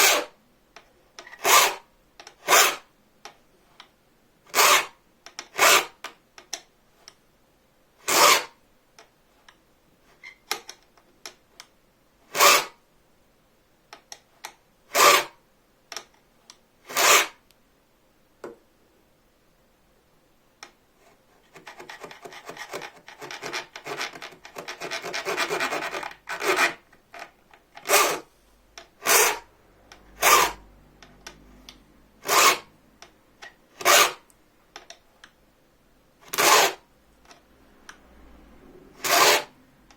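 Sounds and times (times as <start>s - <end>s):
file rasping on saw blade: 0.0s - 0.4s, 1.3s - 1.8s, 2.4s - 2.8s, 4.5s - 5.0s, 5.6s - 6.0s, 8.1s - 8.6s, 12.3s - 12.8s, 14.9s - 15.4s, 16.9s - 17.4s, 21.6s - 26.8s, 27.8s - 28.3s, 29.0s - 29.5s, 30.1s - 30.7s, 32.2s - 32.7s, 33.8s - 34.2s, 36.3s - 36.8s, 39.0s - 39.6s.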